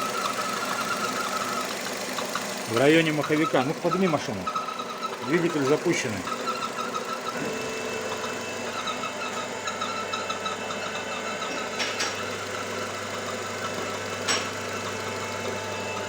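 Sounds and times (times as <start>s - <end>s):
car engine idling: 0.0s - 6.9s
quick repeating squeak: 0.0s - 12.3s.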